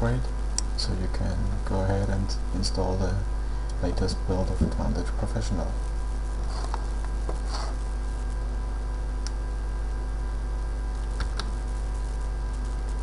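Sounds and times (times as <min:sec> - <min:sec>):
low electrical hum: 0:00.0 - 0:13.0
faint clicks: 0:10.9 - 0:11.6.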